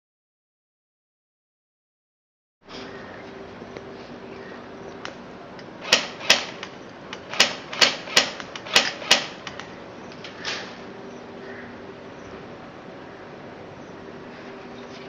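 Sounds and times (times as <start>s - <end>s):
airsoft gun shots: 5.8s - 9.7s.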